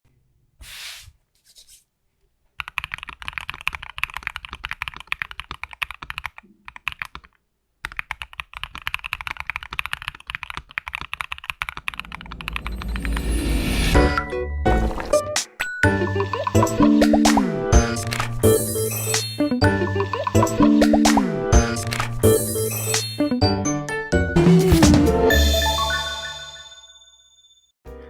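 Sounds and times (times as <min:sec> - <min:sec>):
mechanical keyboard typing clacks: 0:02.6 - 0:12.8.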